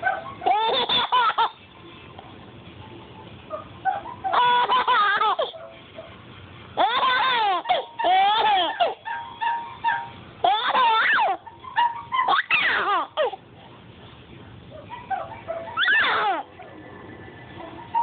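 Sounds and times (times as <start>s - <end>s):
baby laughing: 0.4s - 1.6s, 3.6s - 5.6s, 6.8s - 13.4s, 15.0s - 16.8s.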